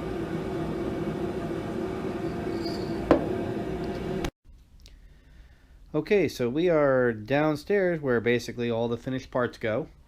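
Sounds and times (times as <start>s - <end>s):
machine droning hum: 0.0s - 4.3s.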